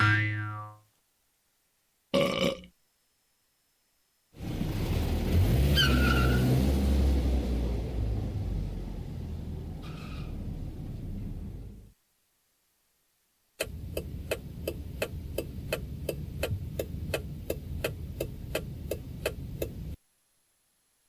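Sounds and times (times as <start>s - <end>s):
low rumble: 6.6s - 11.9s.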